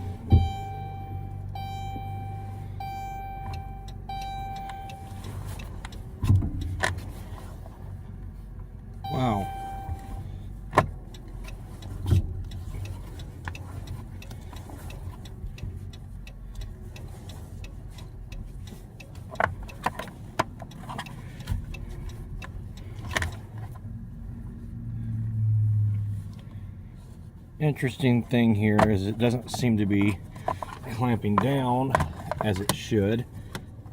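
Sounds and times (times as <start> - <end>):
low held tone: 0.0 - 5.7, 9.0 - 10.5.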